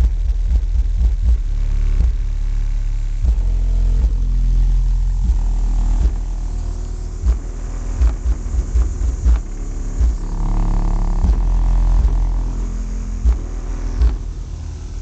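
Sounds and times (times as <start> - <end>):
bass-heavy hip-hop music: 0.0 - 15.0
separate bass hits: 0.0 - 15.0.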